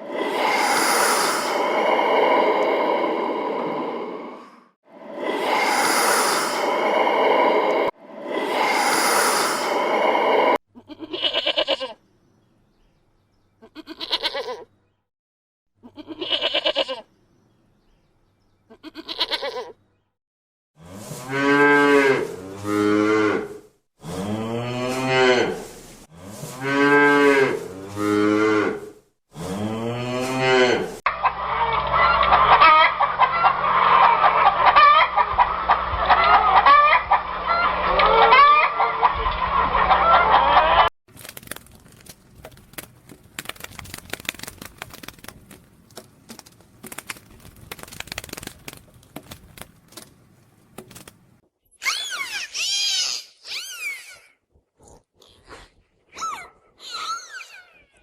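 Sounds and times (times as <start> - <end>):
poultry clucking: 31.1 - 40.9.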